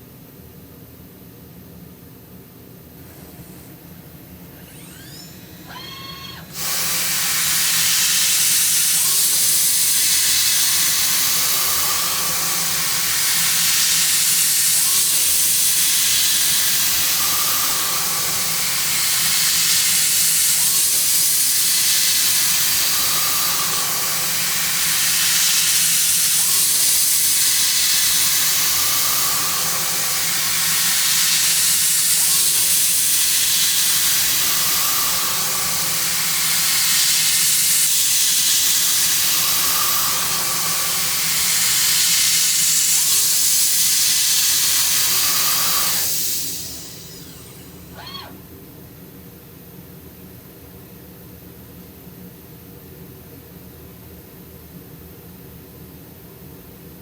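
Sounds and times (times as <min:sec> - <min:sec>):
milling machine hissing: 0:04.3 - 0:48.3.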